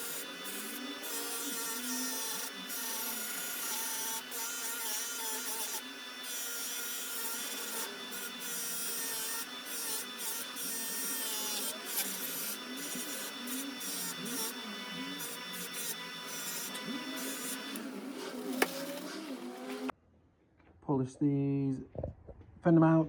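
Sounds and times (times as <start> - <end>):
metal being polished: 0.0 - 19.9.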